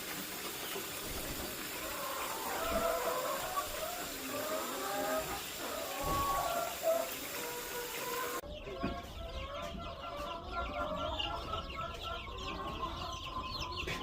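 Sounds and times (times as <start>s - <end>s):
rushing water-like hiss: 0.0s - 8.4s
baby chicks peeping: 0.0s - 14.0s.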